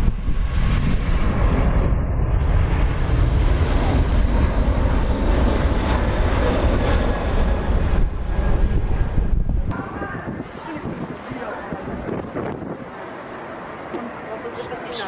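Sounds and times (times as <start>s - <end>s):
airplane engines roaring: 0.0s - 15.0s.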